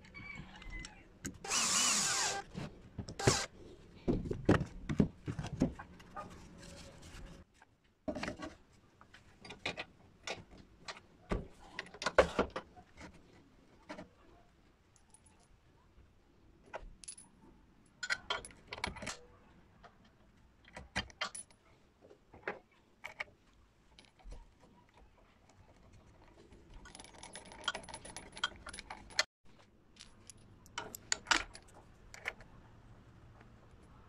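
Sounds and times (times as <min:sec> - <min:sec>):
metal parts clinking: 0:26.8 - 0:29.3.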